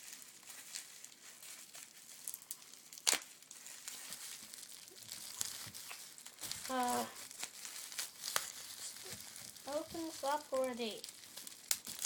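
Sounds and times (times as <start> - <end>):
plastic packaging crinkling: 0.0 - 12.0
sharp snap: 3.0 - 3.2.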